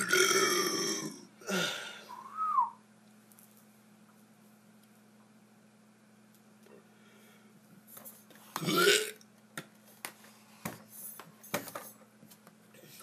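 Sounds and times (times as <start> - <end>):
man burping: 0.0 - 2.0, 8.6 - 9.2.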